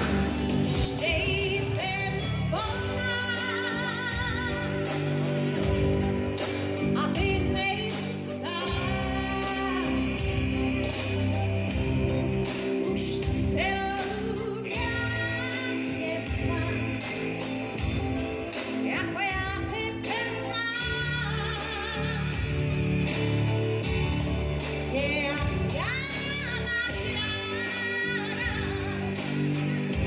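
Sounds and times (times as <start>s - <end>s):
woman singing: 0.0s - 5.8s, 6.8s - 11.9s, 12.8s - 17.6s, 18.5s - 23.1s, 24.9s - 30.0s
pop-rock band music: 0.0s - 30.0s.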